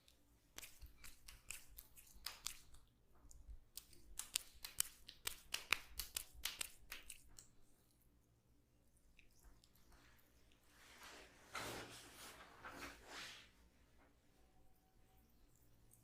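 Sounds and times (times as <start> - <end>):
hands slapping on skin: 0.5 - 2.8, 3.7 - 7.5.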